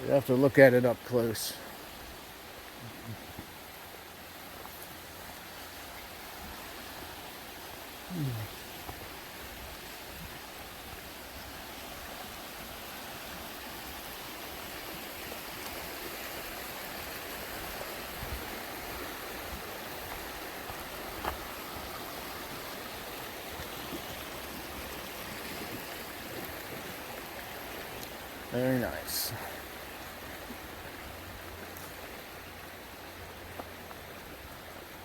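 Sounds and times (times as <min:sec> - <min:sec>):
river water flowing: 0:00.0 - 0:35.0.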